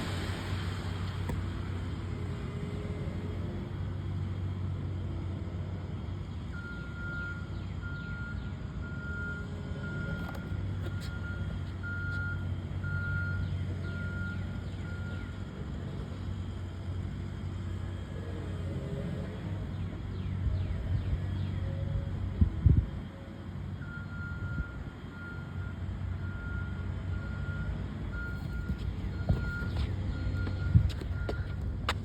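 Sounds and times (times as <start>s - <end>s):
diesel engine running: 0.0s - 32.0s
reversing alarm beeping: 6.5s - 15.5s, 23.8s - 31.9s.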